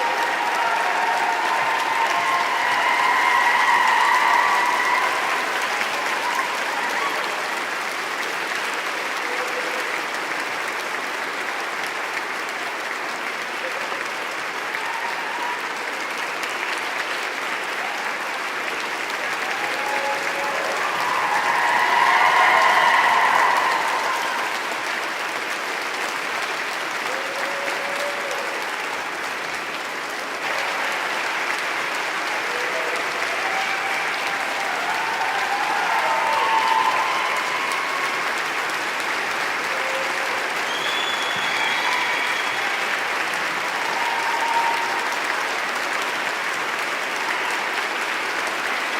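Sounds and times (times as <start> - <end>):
audience applauding: 0.0 - 48.9.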